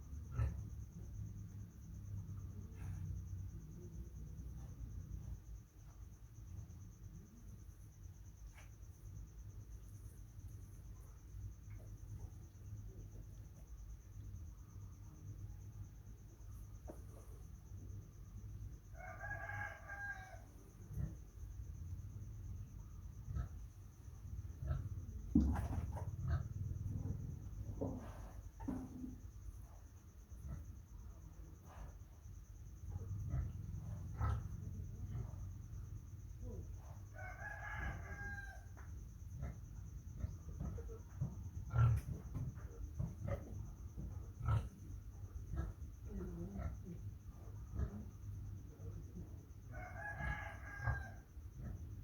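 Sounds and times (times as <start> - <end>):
rooster crowing: 18.9 - 20.5, 37.1 - 38.8, 49.7 - 51.3
thump: 25.3 - 26.0.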